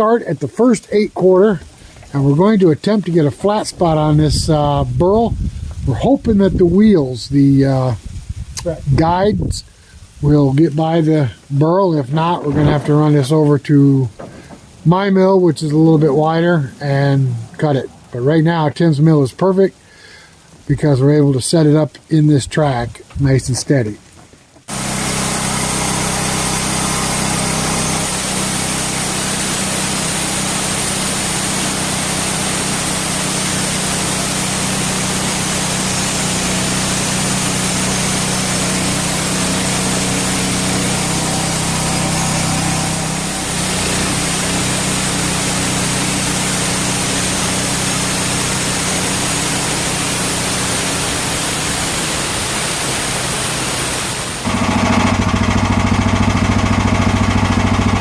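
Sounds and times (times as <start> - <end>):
band blade cutting wood: 24.7 - 51.2
bandsaw mill engine droning: 24.7 - 52.2, 54.3 - 58.0.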